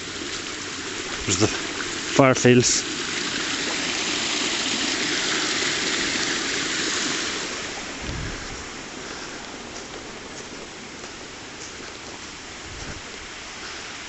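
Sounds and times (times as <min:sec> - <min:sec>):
stream rushing over stones: 0:00.0 - 0:14.0
dull low thump: 0:07.9 - 0:09.0.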